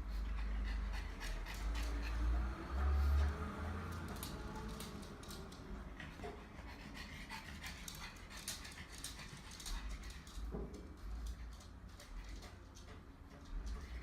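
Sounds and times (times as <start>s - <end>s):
dog panting: 0.0s - 10.5s.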